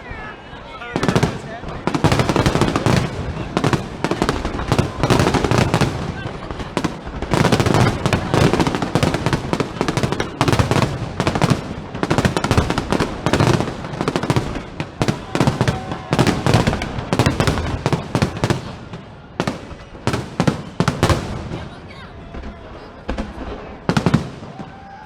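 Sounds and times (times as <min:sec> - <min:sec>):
fireworks booming and crackling: 0:00.0 - 0:25.0.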